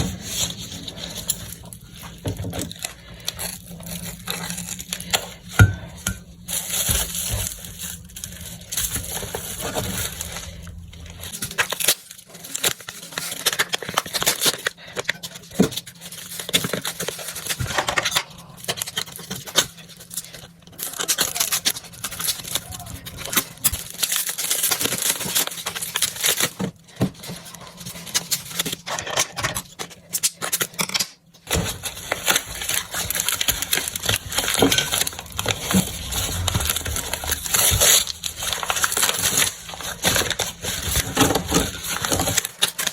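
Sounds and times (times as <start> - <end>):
wrapping crinkling and tearing: 0.0 - 42.9
low hum: 33.7 - 41.1.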